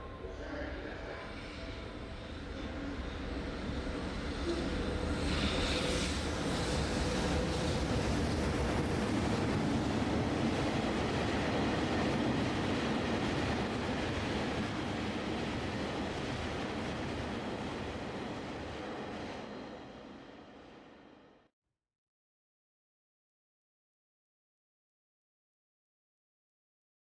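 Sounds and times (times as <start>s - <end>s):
freight train wagons rumbling on rails: 0.0s - 18.8s.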